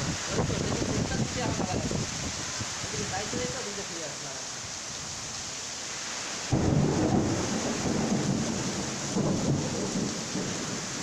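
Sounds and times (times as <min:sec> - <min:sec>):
strong wind buffeting microphone: 0:00.0 - 0:03.6
heavy rain hissing: 0:00.0 - 0:11.0.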